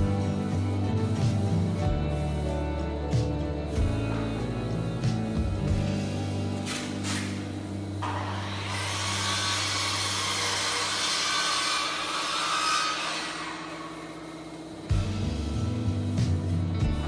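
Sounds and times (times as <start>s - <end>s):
power saw motor humming: 6.0s - 15.8s
saw cutting wood: 6.6s - 15.0s.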